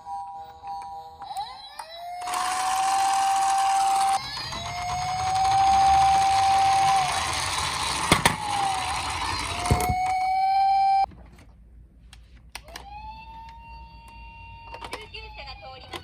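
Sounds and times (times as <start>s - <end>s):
toy electronic siren: 1.2s - 11.1s
whirring rattle: 2.3s - 9.9s.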